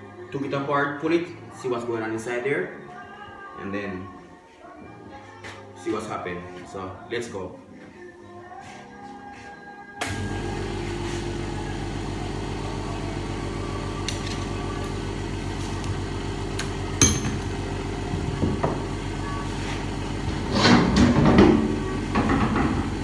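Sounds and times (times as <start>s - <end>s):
sharp metallic knocks: 17.0s - 17.4s.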